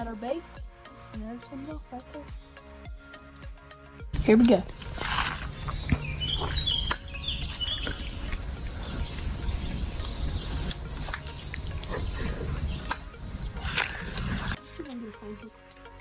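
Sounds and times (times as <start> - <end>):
bird chirps: 4.2 - 14.6
insects buzzing: 4.2 - 14.6.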